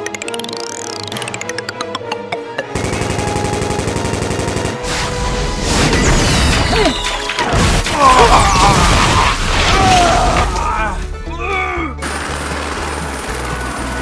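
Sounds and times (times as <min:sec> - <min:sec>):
background music: 0:00.0 - 0:14.0
machine-gun rattle: 0:02.8 - 0:04.8.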